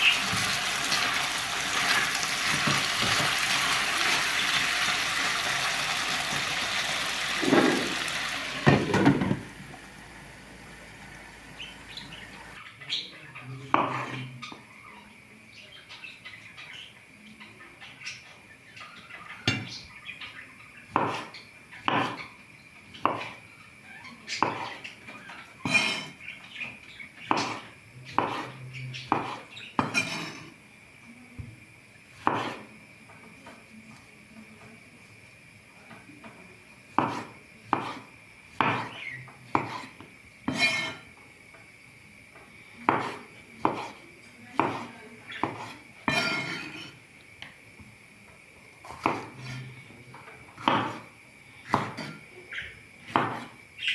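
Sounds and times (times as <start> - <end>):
utensils clinking against dishes: 25.3 - 26.2, 40.5 - 41.1, 46.1 - 47.0.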